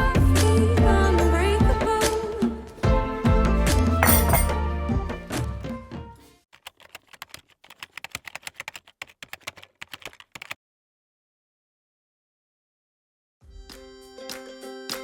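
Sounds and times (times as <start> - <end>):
quick irregular clicks: 6.6 - 10.6.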